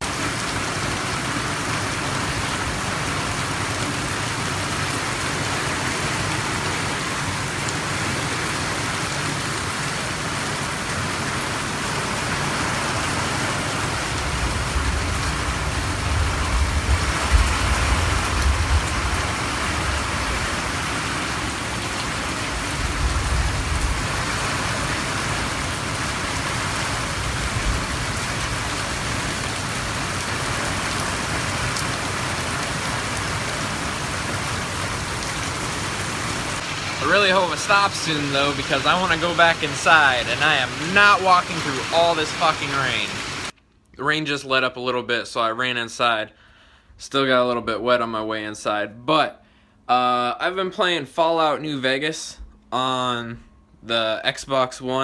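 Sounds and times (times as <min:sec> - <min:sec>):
heavy rain pouring: 0:00.0 - 0:43.5.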